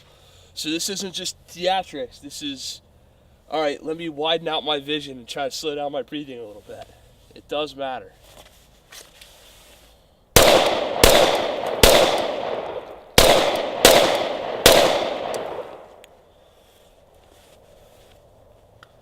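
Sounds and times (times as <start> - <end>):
pistol shots: 10.4 - 16.0.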